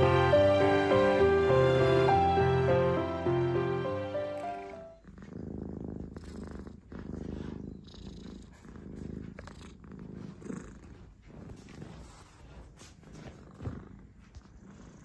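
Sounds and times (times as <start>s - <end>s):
cat purring: 4.4s - 15.0s.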